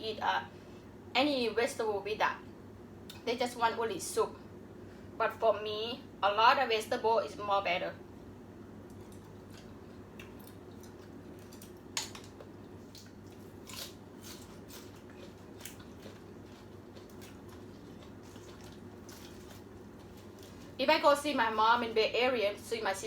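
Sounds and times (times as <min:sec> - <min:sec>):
faint steady hum: 0:00.0 - 0:23.0
chewing and wet mouth smacks: 0:08.9 - 0:20.6.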